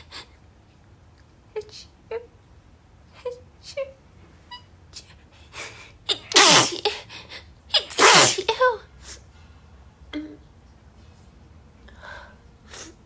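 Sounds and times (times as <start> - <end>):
woman sneezing: 6.1 - 7.0, 7.8 - 8.7.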